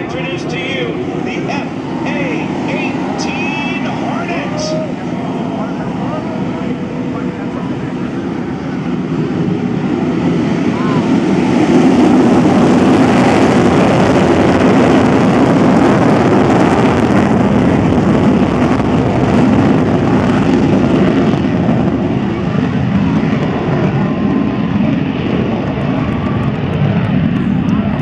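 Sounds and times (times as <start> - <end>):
jet engine roar: 0.0 - 28.0.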